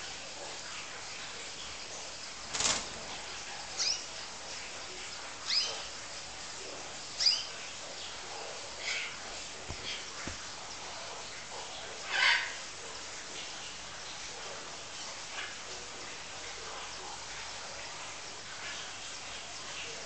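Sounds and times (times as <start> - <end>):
canary chirps: 2.6 - 4.3, 5.4 - 6.0, 7.1 - 8.2.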